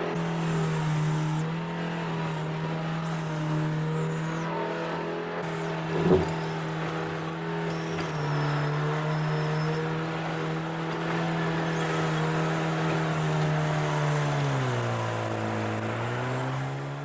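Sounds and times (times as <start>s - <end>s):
backhoe diesel engine running: 5.4s - 16.1s.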